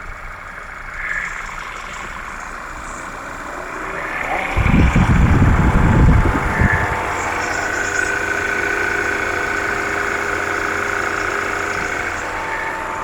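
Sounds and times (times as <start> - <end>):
car engine idling: 0.0 - 13.0
loud low rumble: 3.1 - 10.0.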